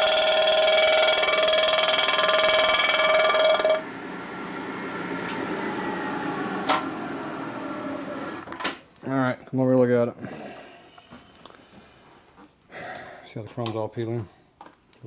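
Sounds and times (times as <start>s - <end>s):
machine tool cutting metal squeal: 0.0s - 3.8s
quiet machine noise: 0.0s - 8.8s.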